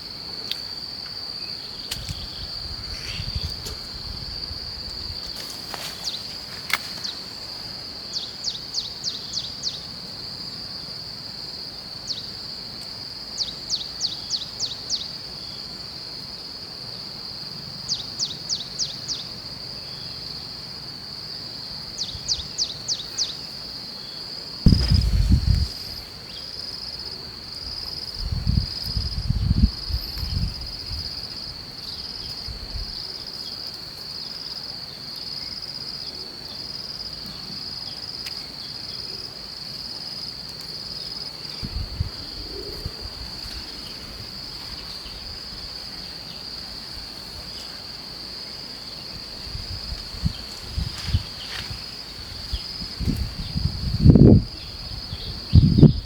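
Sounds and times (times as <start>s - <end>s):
insects trilling: 0.0s - 56.0s
rapid insect chirps: 0.0s - 56.0s
low rumbling thumps: 24.7s - 26.0s.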